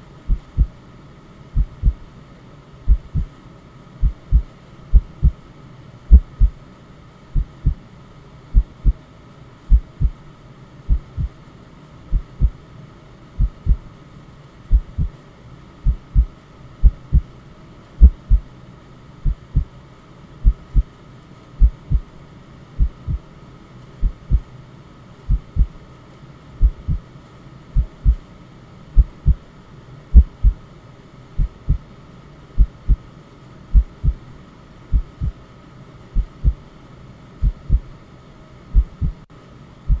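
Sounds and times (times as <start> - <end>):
steady white noise: 0.0 - 40.0
heartbeat thumps: 0.3 - 0.8, 1.6 - 2.1, 2.9 - 3.3, 4.0 - 5.4, 6.1 - 6.6, 7.4 - 7.8, 8.6 - 9.0, 9.7 - 10.2, 10.9 - 11.4, 12.1 - 12.6, 13.4 - 13.9, 14.7 - 15.1, 15.8 - 17.3, 18.0 - 18.4, 19.2 - 19.7, 20.4 - 20.9, 21.6 - 22.1, 22.8 - 23.2, 24.0 - 24.5, 25.3 - 25.8, 26.6 - 27.0, 27.8 - 28.2, 29.0 - 29.4, 30.1 - 30.6, 31.4 - 31.8, 32.6 - 33.0, 33.7 - 34.2, 34.9 - 35.4, 36.2 - 36.6, 37.4 - 37.9, 38.7 - 39.2.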